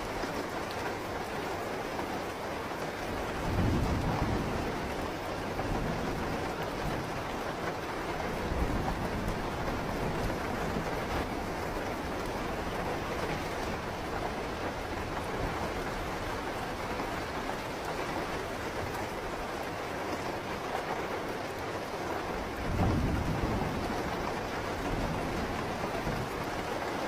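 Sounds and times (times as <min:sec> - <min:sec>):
steady rain falling: 0:00.0 - 0:27.0
thunder rumble: 0:03.2 - 0:19.4, 0:22.4 - 0:26.7.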